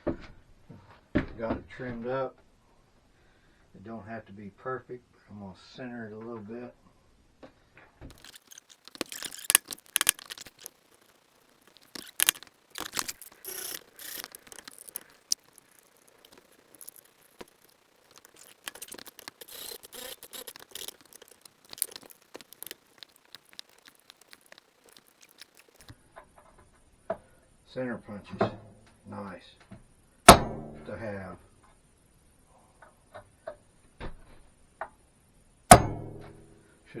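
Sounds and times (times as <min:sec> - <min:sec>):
scraping and rattling: 0:08.1 - 0:25.9.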